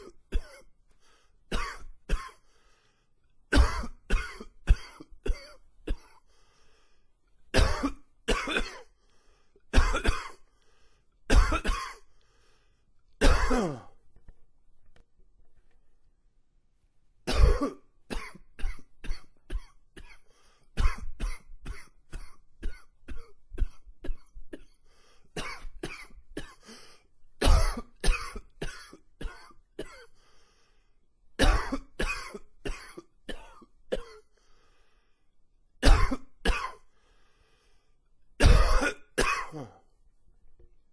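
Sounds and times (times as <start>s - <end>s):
man coughing: 0.0s - 0.7s, 1.5s - 2.4s, 3.5s - 6.2s, 7.6s - 8.9s, 9.7s - 10.4s, 11.3s - 12.1s, 13.2s - 14.0s, 17.3s - 20.2s, 27.4s - 30.1s, 31.4s - 34.3s, 35.8s - 36.8s, 38.4s - 39.8s.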